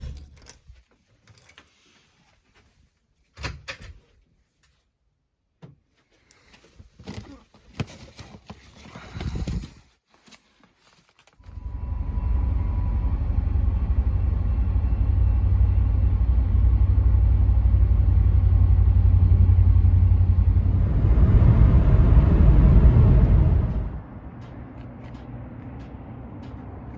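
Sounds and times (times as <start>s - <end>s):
vehicle low rumble: 11.4s - 26.9s.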